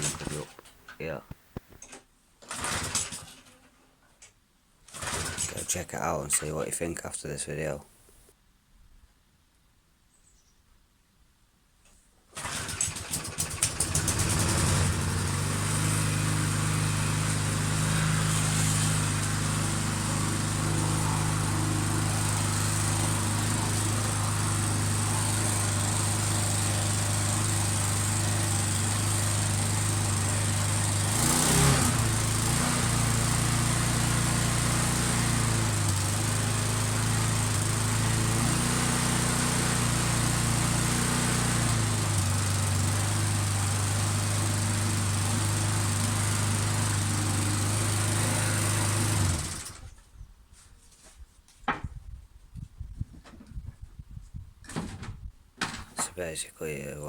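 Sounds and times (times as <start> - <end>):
lawn mower engine running: 0.0 - 0.6, 2.4 - 3.5, 4.9 - 5.7, 12.3 - 49.9.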